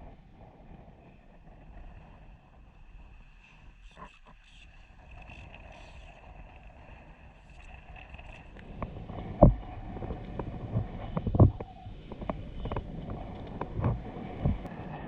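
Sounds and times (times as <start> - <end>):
wind buffeting microphone: 6.1 - 15.0
water sloshing against boat: 8.3 - 14.8
heavy low thumps: 13.8 - 14.7.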